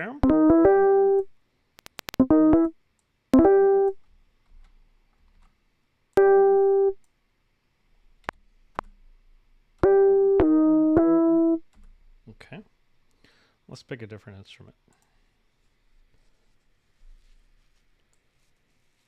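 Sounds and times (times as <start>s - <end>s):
piano block chords: 0.2s - 1.3s, 2.1s - 2.8s, 3.4s - 4.0s, 6.2s - 7.0s, 9.8s - 11.7s
faint clicks: 1.8s - 2.2s.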